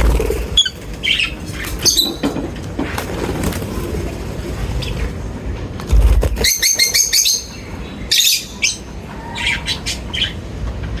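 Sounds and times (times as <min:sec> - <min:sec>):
lovebirds chirping: 0:00.4 - 0:02.3, 0:06.3 - 0:10.4
bird squawking: 0:06.3 - 0:10.4.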